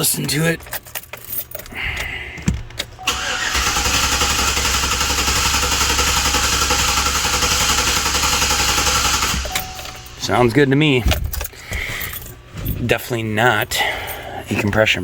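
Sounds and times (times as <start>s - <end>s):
engine starter cranking: 2.8s - 10.2s.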